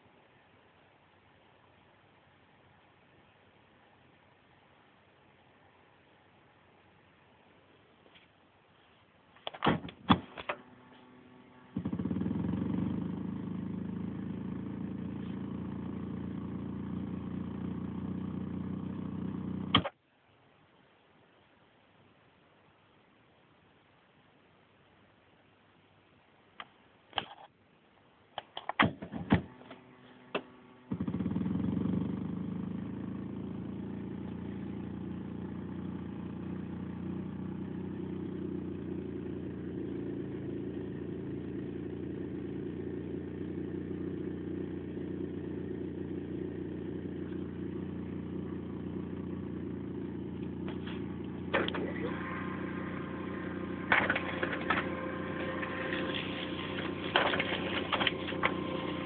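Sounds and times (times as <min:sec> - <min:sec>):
steady buzzing hum: 0:09.6 - 0:20.0, 0:29.1 - 0:59.0.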